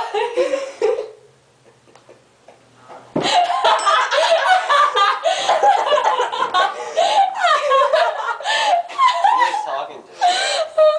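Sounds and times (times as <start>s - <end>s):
people laughing loudly: 3.2s - 10.9s.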